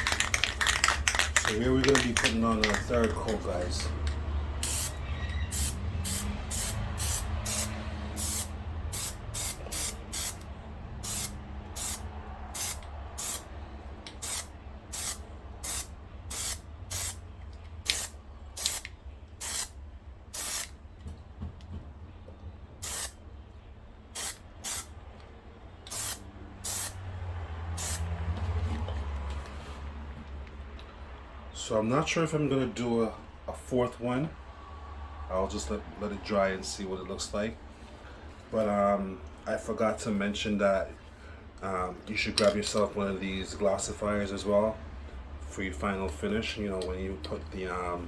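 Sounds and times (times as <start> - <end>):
aerosol can spraying in hissing bursts: 4.6 - 10.4, 11.0 - 12.0, 12.6 - 13.5, 14.2 - 17.2, 20.4 - 20.7, 22.8 - 23.1, 25.9 - 26.9.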